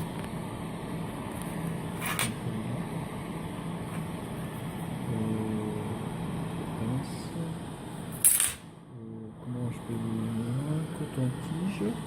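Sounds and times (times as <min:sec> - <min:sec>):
low mechanical hum: 0:00.0 - 0:12.0.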